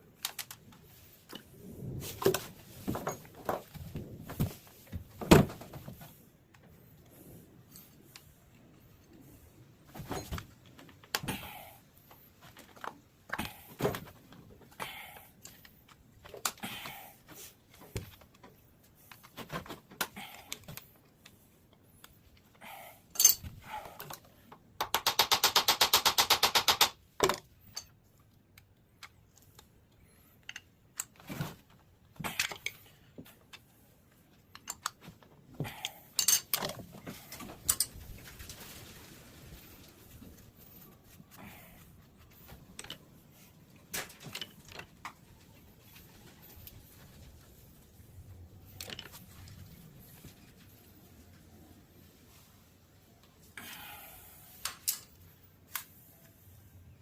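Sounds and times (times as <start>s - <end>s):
metal tools clinking and knocking: 23.1s - 23.6s, 27.2s - 28.0s, 36.1s - 38.0s.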